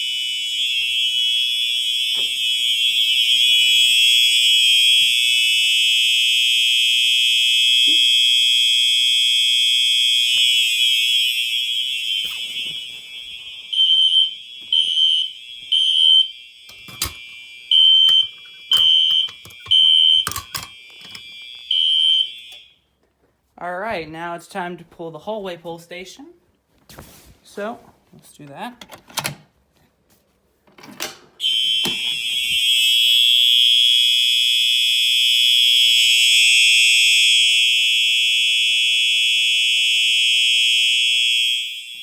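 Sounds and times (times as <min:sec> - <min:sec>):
fire alarm horn beeping: 0:00.0 - 0:22.9, 0:31.4 - 0:42.0
continuous electronic horn tone: 0:31.4 - 0:42.0.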